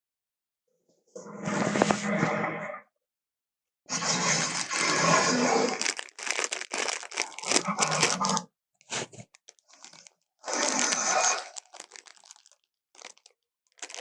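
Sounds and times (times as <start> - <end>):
harsh crunching and tearing: 4.3 - 14.0.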